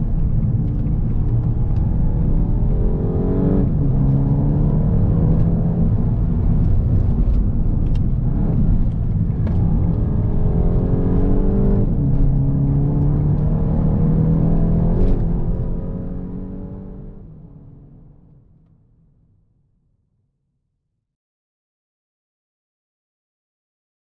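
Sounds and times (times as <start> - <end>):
car engine accelerating: 0.0 - 18.1.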